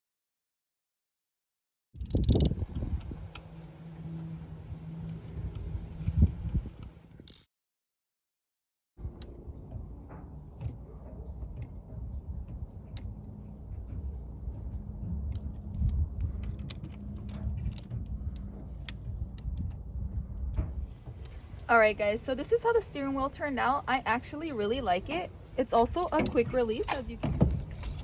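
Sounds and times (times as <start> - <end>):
metallic clicks of hand tools: 2.0 - 2.9, 7.2 - 7.5
low rumble of handling noise: 2.0 - 7.4, 9.0 - 28.0.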